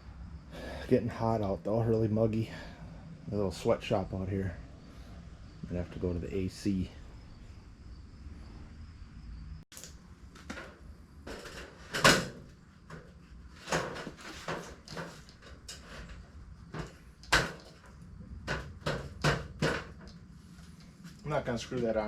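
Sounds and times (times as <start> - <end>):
wood knocks and clatters: 10.3 - 20.3.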